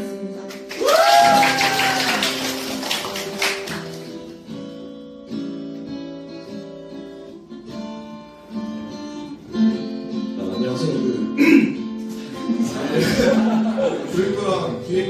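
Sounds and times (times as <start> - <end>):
acoustic guitar strummed chords: 3.5 - 15.0.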